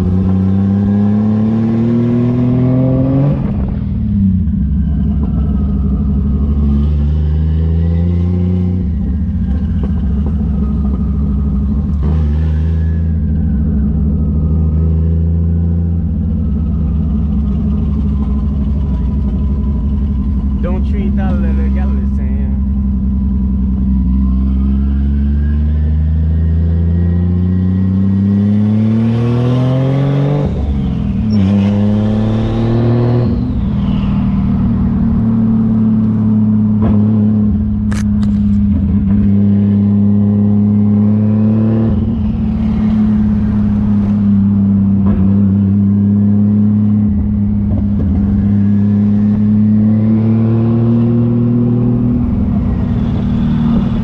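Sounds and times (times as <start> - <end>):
car engine revving through gears: 0.0 - 54.0
sharp click: 37.9 - 38.6.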